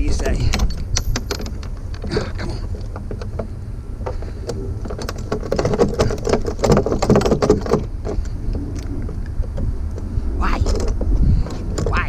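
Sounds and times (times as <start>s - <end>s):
low rumble: 7.9s - 12.0s.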